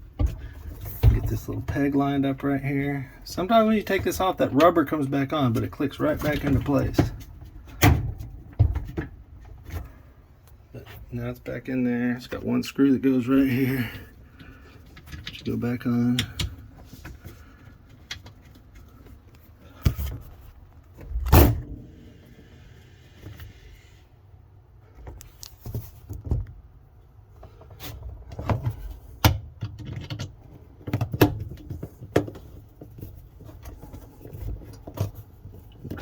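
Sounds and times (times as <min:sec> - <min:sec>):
plastic parts clicking and knocking: 0:27.4 - 0:36.0.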